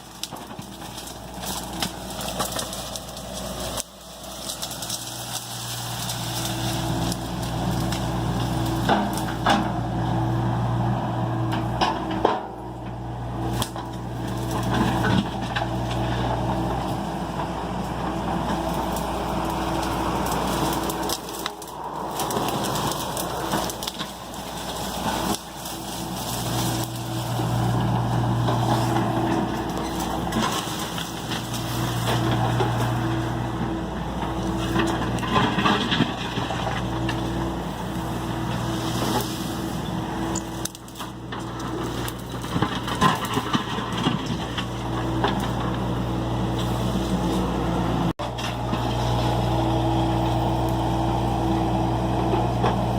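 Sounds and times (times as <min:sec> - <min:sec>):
material cracking and crushing: 0:00.0 - 0:09.7, 0:13.4 - 0:46.0
excavator diesel engine running: 0:00.0 - 0:52.9.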